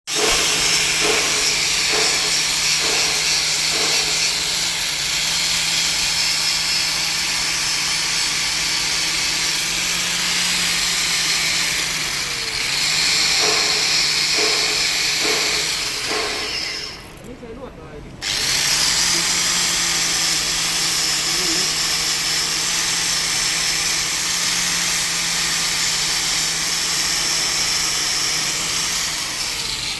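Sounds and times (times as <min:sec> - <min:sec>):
welding arc crackling: 0:00.1 - 0:17.1.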